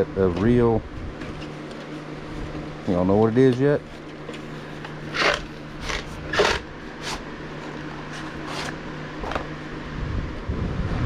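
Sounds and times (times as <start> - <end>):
steady low hum: 0.0 - 11.0
packaging rustling and scraping: 1.2 - 9.6.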